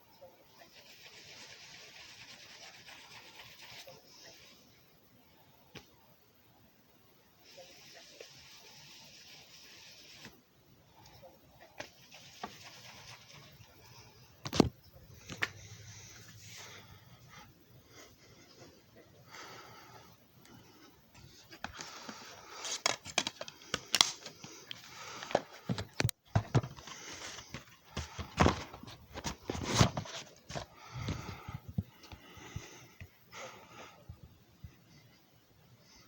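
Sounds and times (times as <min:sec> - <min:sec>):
objects being handled: 0:11.0 - 0:16.8, 0:20.5 - 0:32.2.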